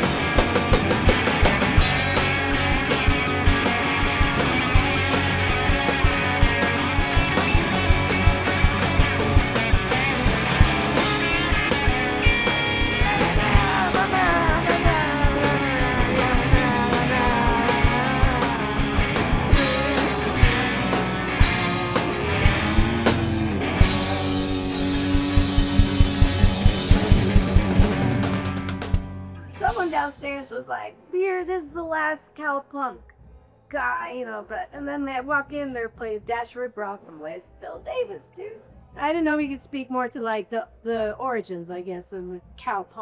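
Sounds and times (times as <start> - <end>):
electric guitar lead: 0.0 - 29.9
fast drum hits: 0.0 - 30.2
bass and drums: 0.0 - 30.4.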